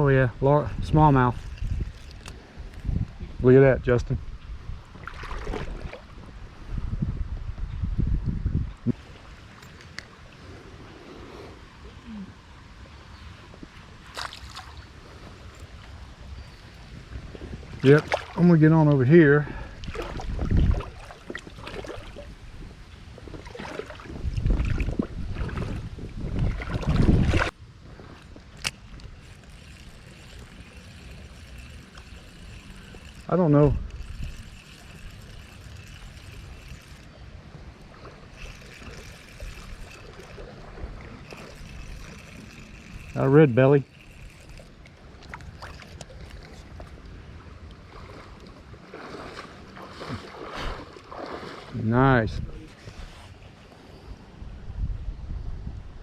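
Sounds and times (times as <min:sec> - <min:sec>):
wind rumble on microphone: 0:00.0 - 0:14.2, 0:14.8 - 0:56.0
water sloshing and splashing: 0:04.9 - 0:06.4, 0:13.9 - 0:16.0, 0:17.7 - 0:51.9
flowing creek: 0:08.9 - 0:54.4.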